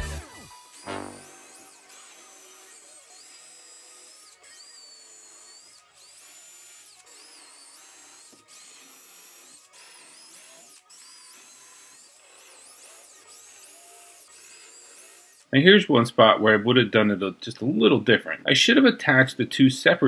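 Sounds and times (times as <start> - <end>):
cordless drill motor whine: 0.0 - 15.6.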